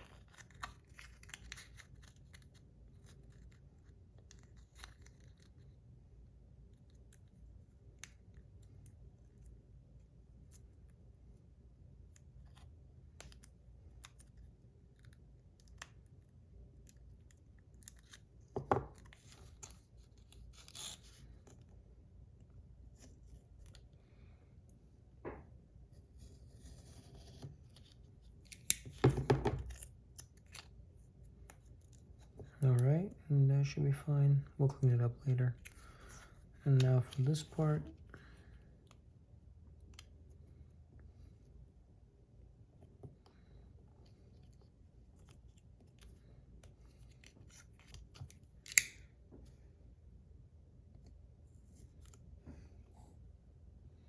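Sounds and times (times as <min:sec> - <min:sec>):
scratchy handling sounds: 0:12.1 - 0:21.9, 0:25.8 - 0:32.6
scissors snipping tape: 0:48.7 - 0:49.0.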